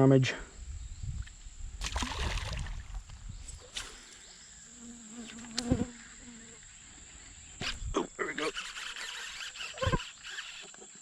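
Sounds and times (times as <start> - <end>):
flying insect buzzing: 0.6 - 11.0
high-pitched insect drone: 3.2 - 11.0.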